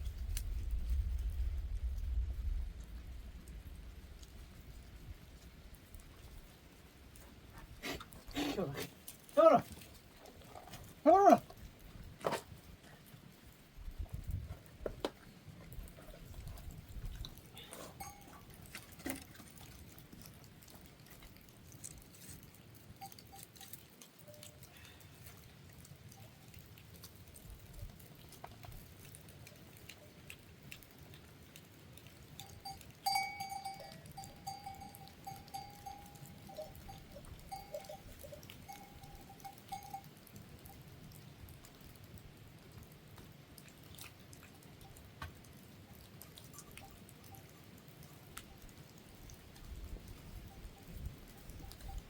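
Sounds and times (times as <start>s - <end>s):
goat bells jingling: 17.6s - 19.9s, 22.9s - 24.6s, 32.3s - 40.8s, 50.1s - 52.0s.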